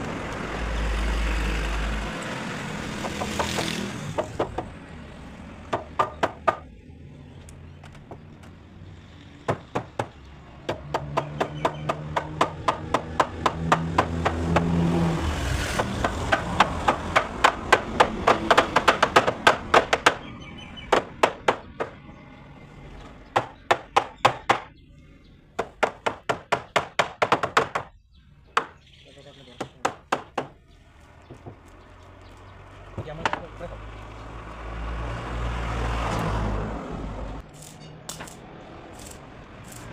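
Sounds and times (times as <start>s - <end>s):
sharp strikes on wood: 9.5s - 14.8s.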